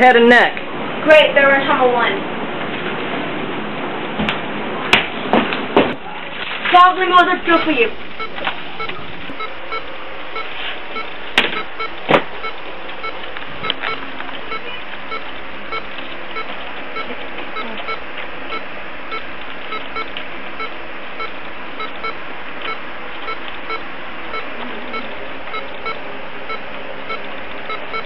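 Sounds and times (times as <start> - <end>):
short electronic beeps: 7.5 - 13.2, 13.8 - 28.0.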